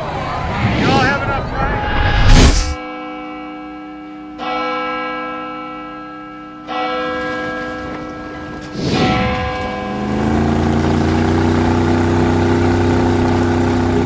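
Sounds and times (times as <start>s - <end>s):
short whoosh: 0.1s - 2.8s, 8.7s - 9.8s
large bell ringing: 2.8s - 12.8s.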